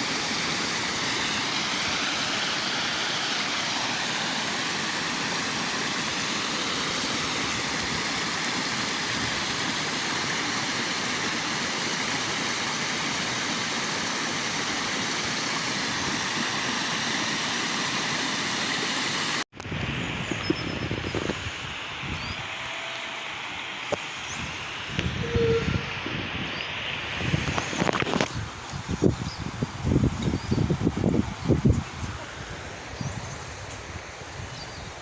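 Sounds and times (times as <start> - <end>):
waterfall rushing: 0.0 - 19.4.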